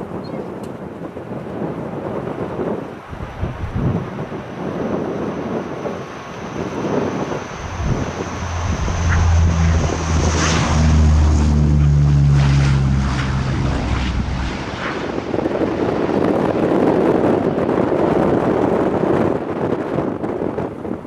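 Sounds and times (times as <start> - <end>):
wind noise on microphone: 0.0 - 21.0
propeller aircraft drone passing: 3.1 - 18.1.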